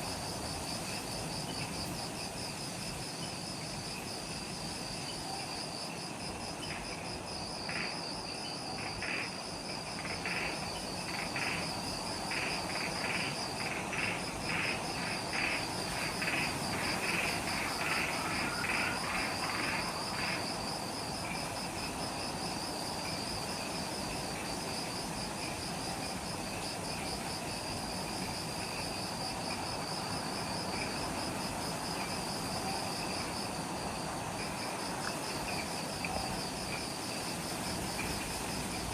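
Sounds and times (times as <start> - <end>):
lower insect call bursts: 0.0 - 38.9
insect pulsing trill: 10.0 - 20.6.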